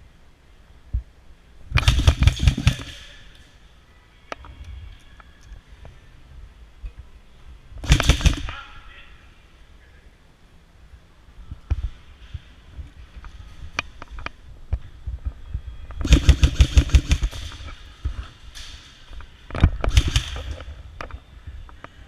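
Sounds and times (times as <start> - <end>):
airsoft gun shots: 1.8 - 3.2, 7.8 - 8.6, 16.0 - 17.6, 19.9 - 20.6.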